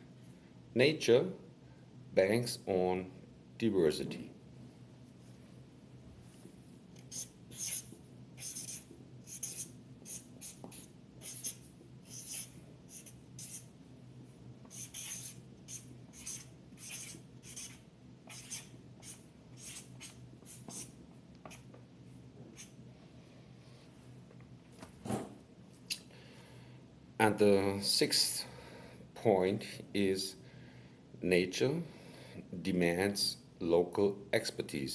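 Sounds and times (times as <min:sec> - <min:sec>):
faint steady hum: 0:00.0 - 0:34.9
handwriting scratchy strokes: 0:07.0 - 0:13.7, 0:14.7 - 0:20.9.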